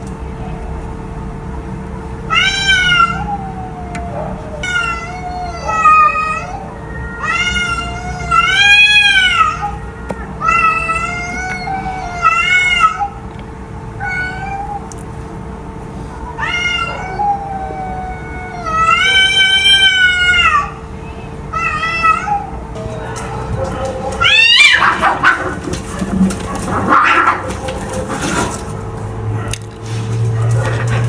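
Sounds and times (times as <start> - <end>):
cat meowing: 2.3 - 13.2, 14.0 - 14.9, 16.1 - 28.3.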